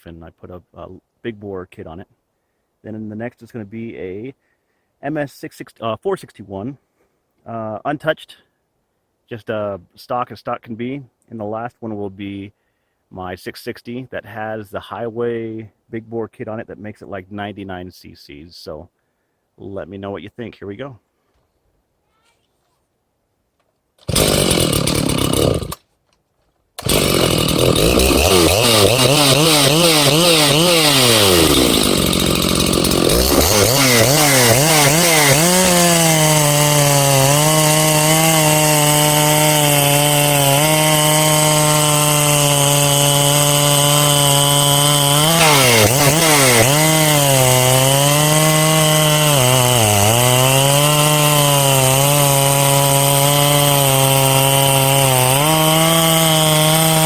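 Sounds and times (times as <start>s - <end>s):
chainsaw cutting wood: 24.0s - 25.9s, 26.8s - 57.0s.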